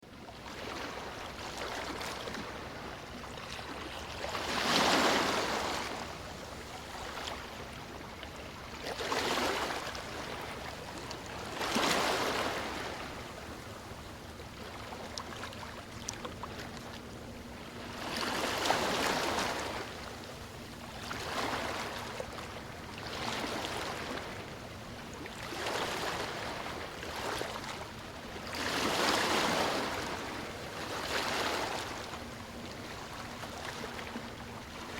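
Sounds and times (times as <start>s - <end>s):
sea waves breaking on beach: 3.5s - 8.0s, 8.8s - 13.6s, 17.7s - 22.4s, 23.0s - 24.6s, 25.3s - 34.9s.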